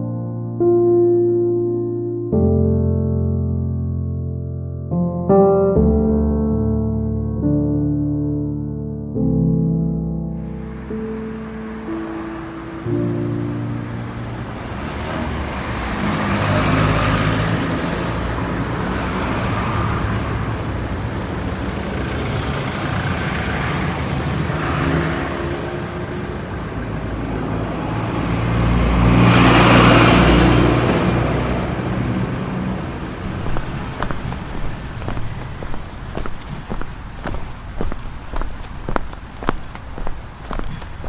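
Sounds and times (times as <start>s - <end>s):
cars passing by: 10.3s - 41.0s.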